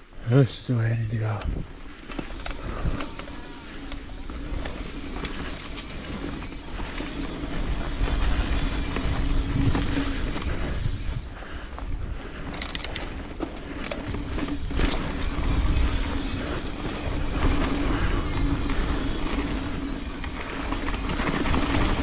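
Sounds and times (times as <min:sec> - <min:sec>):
bike knocking and rattling: 0:01.6 - 0:22.0
wind on camera microphone: 0:07.3 - 0:12.2.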